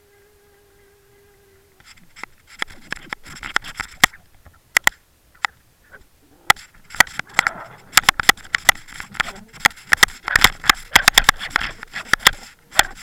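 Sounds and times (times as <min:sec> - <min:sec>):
faint scraping: 0:05.4 - 0:13.0.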